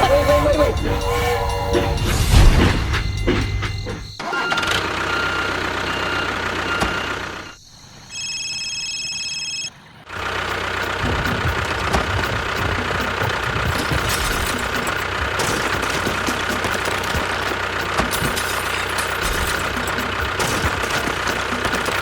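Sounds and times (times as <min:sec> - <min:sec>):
small engine running: 0:00.0 - 0:07.6, 0:10.1 - 0:22.0
pulsing electronic tone: 0:00.0 - 0:09.7.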